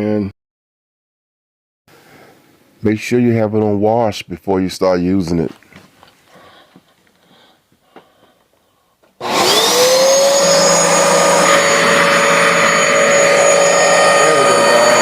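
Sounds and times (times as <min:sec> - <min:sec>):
carpet washer motor whine: 0:09.2 - 0:15.0.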